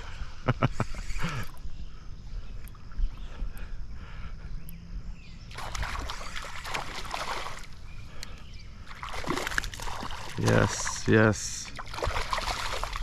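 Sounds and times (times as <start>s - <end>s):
water splashing: 5.5s - 13.0s.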